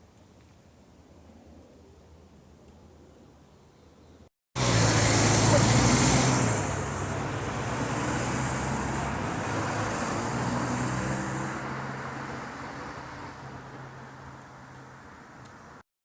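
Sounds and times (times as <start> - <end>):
vehicle driving past: 4.6 - 15.4.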